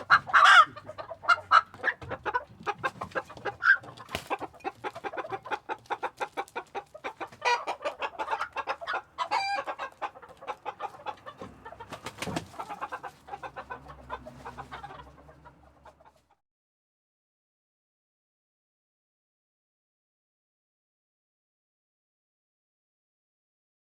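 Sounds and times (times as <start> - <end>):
chickens clucking: 0.0 - 16.4
drawn-out chicken calls: 0.0 - 16.4.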